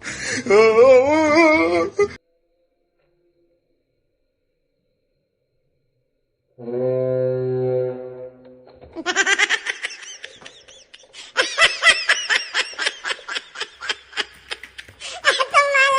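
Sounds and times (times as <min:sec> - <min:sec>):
air horn blast: 0:06.6 - 0:08.6
person laughing hard: 0:09.0 - 0:15.9.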